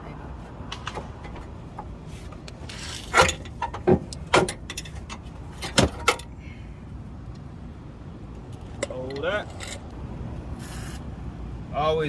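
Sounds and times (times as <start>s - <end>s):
short scrape: 10.6s - 11.1s.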